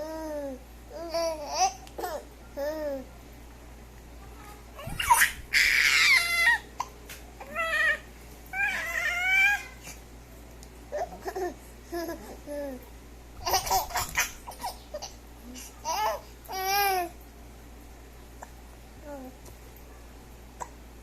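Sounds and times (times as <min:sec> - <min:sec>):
baby babbling and squealing: 0:04.8 - 0:06.6
baby giggling: 0:13.4 - 0:15.2.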